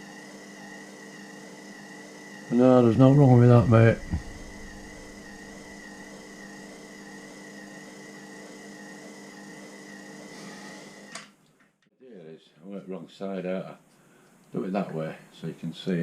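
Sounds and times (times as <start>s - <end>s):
electric motor humming and whining: 0.0s - 9.6s.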